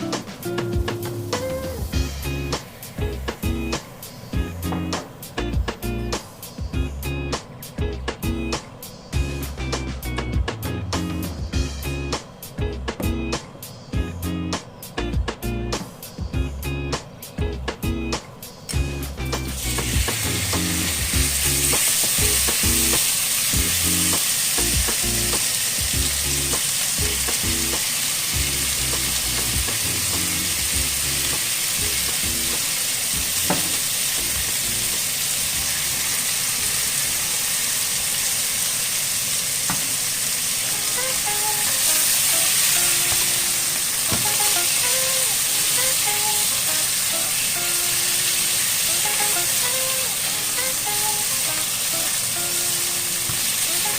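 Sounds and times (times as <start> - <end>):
food sizzling in oil: 18.7 - 53.9.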